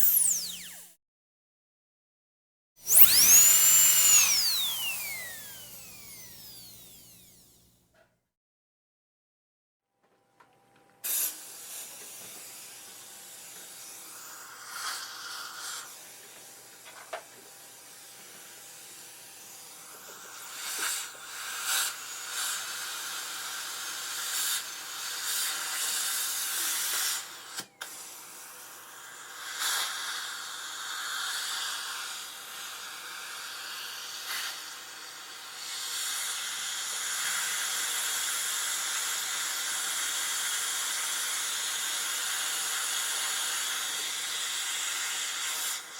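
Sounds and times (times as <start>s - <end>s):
dentist's drill hissing: 0.0s - 0.9s, 2.8s - 7.6s, 28.4s - 45.9s.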